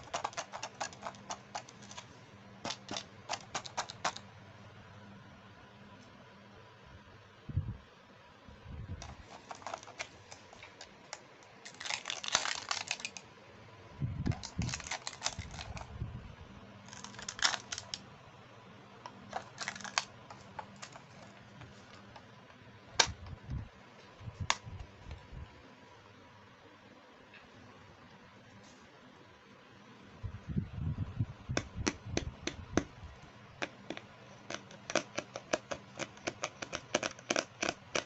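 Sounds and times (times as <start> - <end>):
plastic toy pieces clicking: 0.0 - 4.2, 9.0 - 13.2, 14.3 - 15.9, 16.9 - 18.0, 19.3 - 21.2, 33.6 - 38.0.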